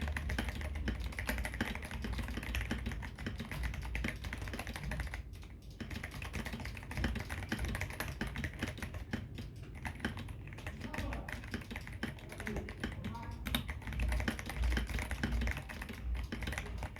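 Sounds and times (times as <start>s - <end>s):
mechanical keyboard typing: 0.0s - 16.9s.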